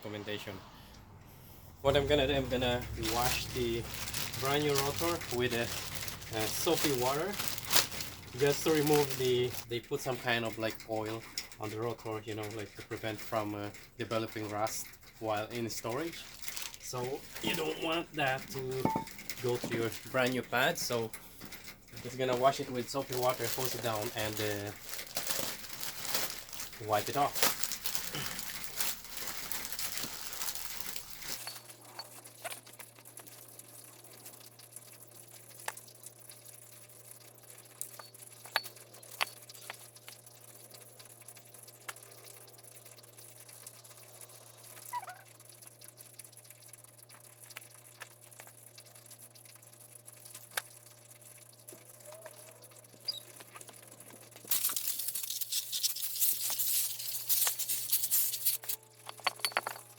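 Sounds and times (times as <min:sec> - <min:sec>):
low steady hum: 0:00.0 - 0:59.9
water dripping: 0:02.2 - 0:31.2, 0:32.3 - 0:59.9
hose water spraying on metal: 0:54.5 - 0:58.8.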